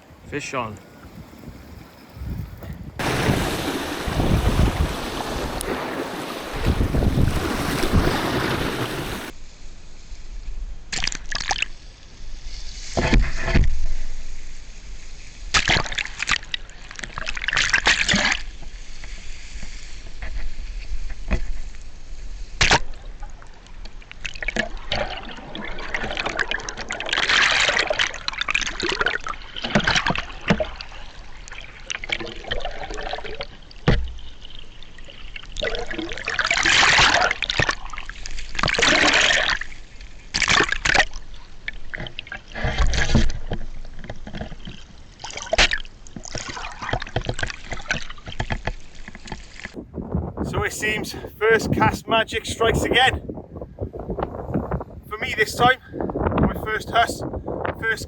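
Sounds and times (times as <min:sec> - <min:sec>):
wind on microphone: 0:00.9 - 0:09.3, 0:49.8 - 0:58.0
sea water splashing: 0:03.0 - 0:09.3, 0:22.7 - 0:49.8.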